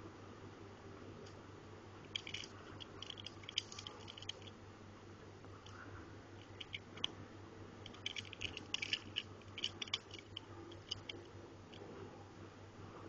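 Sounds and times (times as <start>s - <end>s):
faint steady hum: 0.0s - 13.0s
toy car and packaging clicking: 2.1s - 4.5s, 6.4s - 7.1s, 7.9s - 11.2s.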